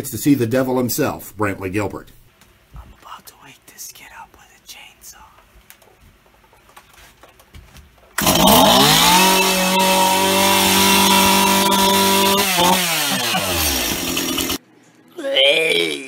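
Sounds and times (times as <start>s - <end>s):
chainsaw engine revving: 8.2s - 14.6s.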